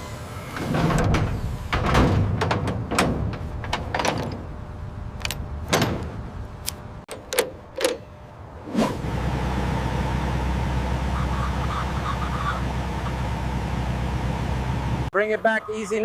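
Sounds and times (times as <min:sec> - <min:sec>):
sharp knocks and clatters: 0:00.6 - 0:04.5.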